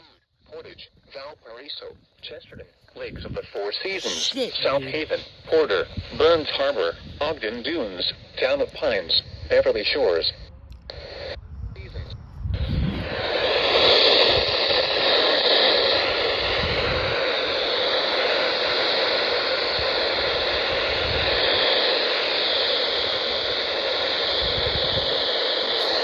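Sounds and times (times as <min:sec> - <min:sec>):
radio static hiss: 0:03.5 - 0:10.4, 0:25.2 - 0:26.0.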